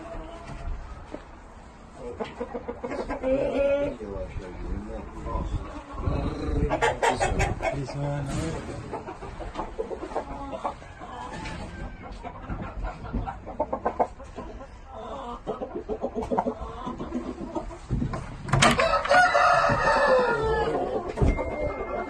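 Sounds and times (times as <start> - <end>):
chickens clucking: 0.0 - 22.0
rooster crowing: 10.8 - 12.2, 18.8 - 21.0.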